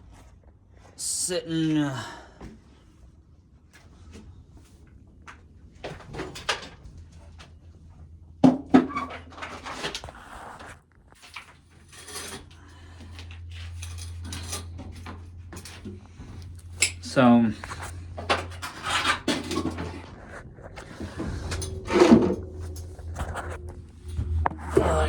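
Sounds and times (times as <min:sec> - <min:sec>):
low steady hum: 0:11.2 - 0:25.0.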